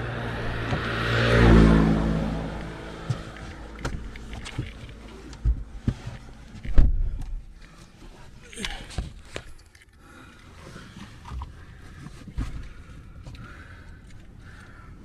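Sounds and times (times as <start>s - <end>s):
road vehicle passing: 0.0s - 6.6s
sharp knocks and clicks: 2.5s - 7.6s.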